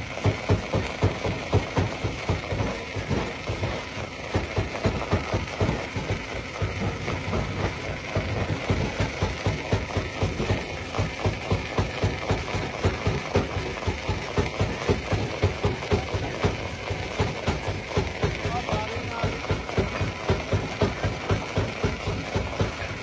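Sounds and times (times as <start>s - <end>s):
stone crusher pounding: 0.0s - 23.0s.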